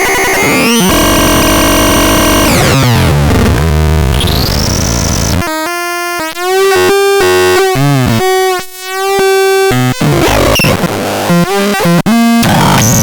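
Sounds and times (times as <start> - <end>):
harsh synthesizer tones sweeping down: 0.1 - 5.4.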